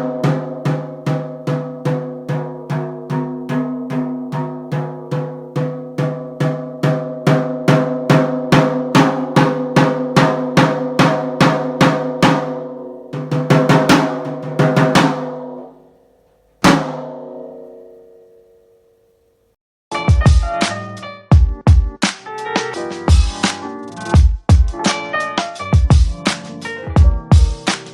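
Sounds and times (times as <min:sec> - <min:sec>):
tom drum struck with stick: 0:00.0 - 0:15.6, 0:16.6 - 0:17.7
different drum struck: 0:00.0 - 0:15.8, 0:16.6 - 0:18.0.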